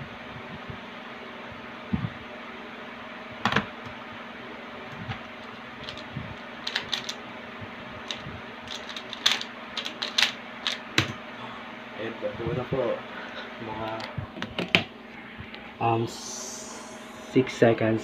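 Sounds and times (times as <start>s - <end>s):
fan hum: 0.0s - 18.0s.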